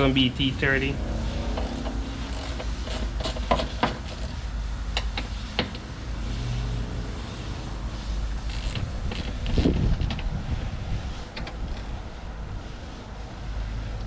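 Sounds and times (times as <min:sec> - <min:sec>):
steady low rumble: 0:00.0 - 0:14.0
hand tools clicking on metal: 0:01.5 - 0:04.4.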